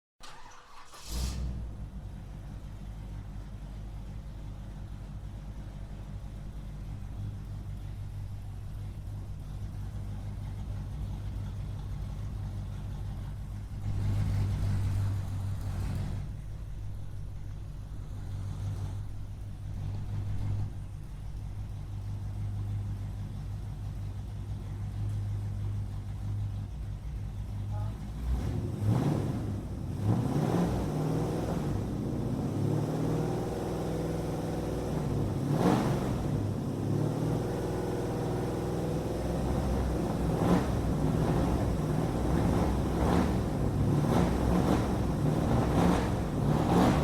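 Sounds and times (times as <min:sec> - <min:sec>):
car engine cranking: 0:00.2 - 0:02.2, 0:33.5 - 0:47.0
car engine idling and revving: 0:00.2 - 0:47.0.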